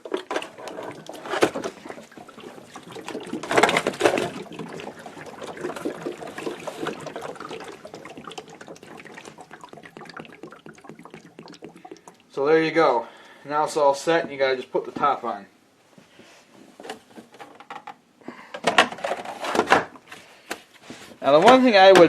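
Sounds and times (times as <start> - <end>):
water pouring into humidifier base: 0.0 - 13.4.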